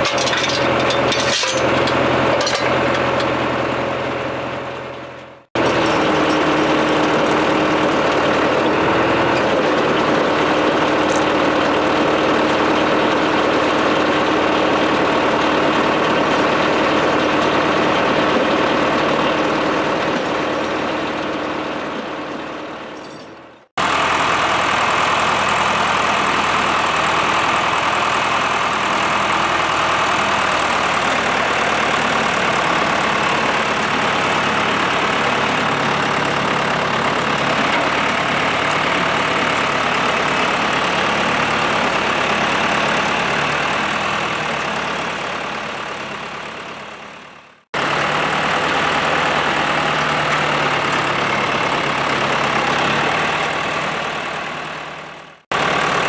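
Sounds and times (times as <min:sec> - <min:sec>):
diesel tractor engine running: 0:00.0 - 0:56.0.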